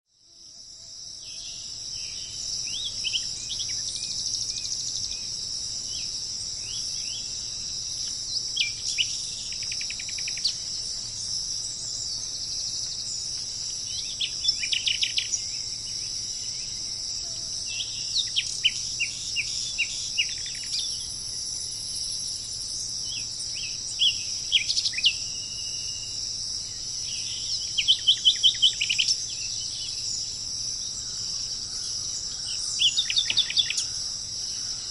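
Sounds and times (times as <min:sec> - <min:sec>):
crickets chirping: 0:00.1 - 0:34.9
songbird singing: 0:00.2 - 0:34.9.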